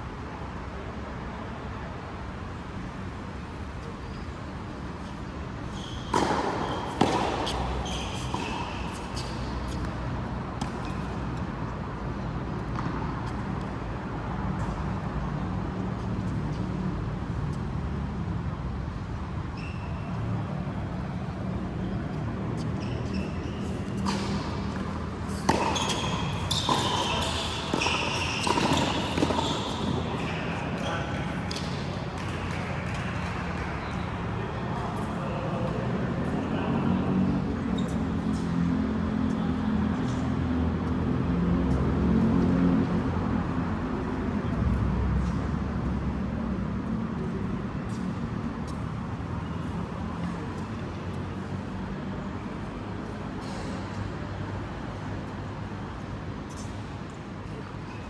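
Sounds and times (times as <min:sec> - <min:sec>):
steady background noise: 0:00.0 - 0:58.0
short high squeaks: 0:05.1 - 0:09.9, 0:22.7 - 0:31.6
sharp racket hits: 0:06.1 - 0:09.9, 0:23.9 - 0:30.6.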